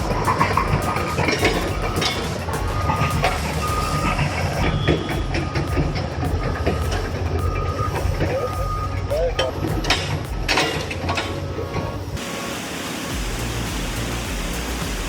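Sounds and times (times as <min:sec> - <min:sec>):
bulldozer tracks clanking: 0:00.0 - 0:12.2
short high beep: 0:02.8 - 0:05.3.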